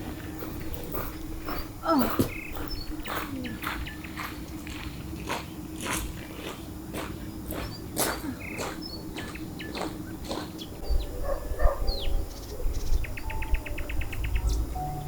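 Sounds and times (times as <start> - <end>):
small birds chirping: 0.0 - 15.0
bird trill: 0.8 - 4.8, 7.5 - 15.0.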